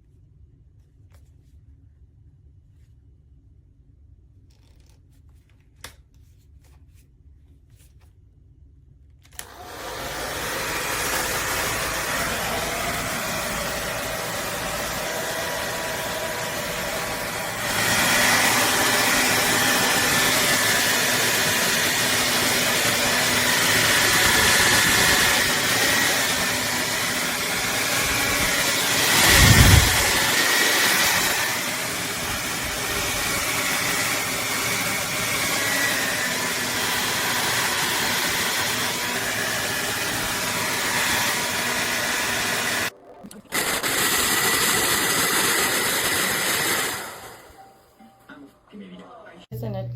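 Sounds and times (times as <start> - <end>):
hair dryer running: 9.4 - 42.9, 43.5 - 47.6.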